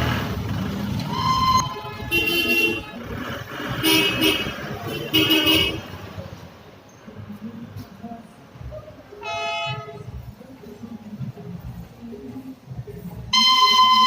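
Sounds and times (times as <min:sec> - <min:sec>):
low engine rumble: 0:00.0 - 0:14.0
vehicle horns tooting: 0:01.0 - 0:06.0, 0:09.2 - 0:10.1, 0:13.3 - 0:14.0.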